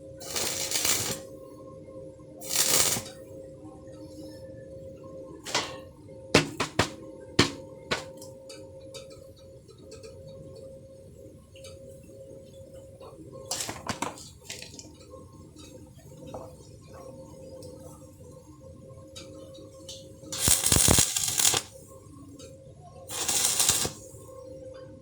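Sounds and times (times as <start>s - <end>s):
burst of hissing: 0.2s - 1.2s, 2.4s - 3.1s, 13.5s - 14.8s, 20.4s - 21.7s, 23.1s - 24.1s.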